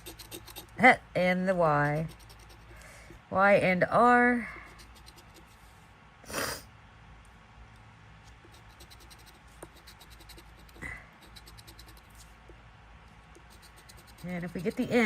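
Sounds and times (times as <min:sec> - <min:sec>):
scratching lottery ticket: 0:00.0 - 0:02.8, 0:04.4 - 0:05.7, 0:08.4 - 0:12.4, 0:13.3 - 0:15.0.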